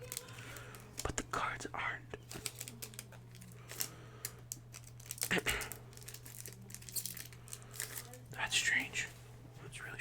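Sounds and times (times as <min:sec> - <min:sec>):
plastic wrapper crinkling: 0:00.0 - 0:09.2.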